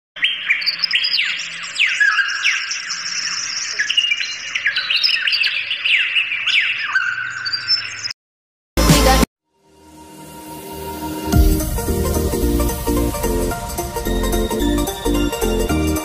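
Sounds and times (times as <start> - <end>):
many birds chirping and squawking: 0.2 - 8.1
loud burst of noise: 11.3 - 16.0.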